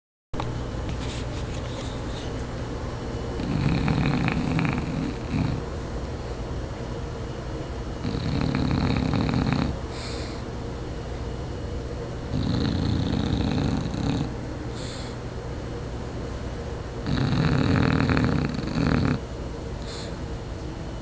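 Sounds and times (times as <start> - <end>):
dog breathing softly: 0.9 - 2.4, 8.1 - 10.5, 12.4 - 15.2, 19.8 - 20.2
dog snoring: 3.4 - 5.7, 8.0 - 10.4, 12.3 - 15.2, 17.0 - 19.2, 19.8 - 20.2.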